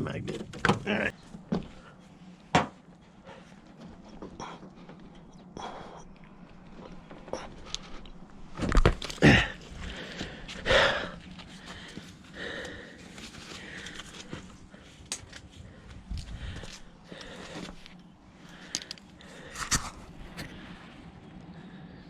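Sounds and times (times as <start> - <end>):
breathy panting: 3.0 - 6.5, 9.2 - 17.8.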